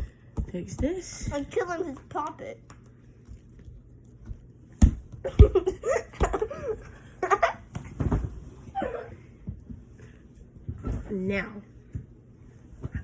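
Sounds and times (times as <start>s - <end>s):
person giggling: 5.2s - 7.6s
thumps close to microphone: 7.7s - 8.4s.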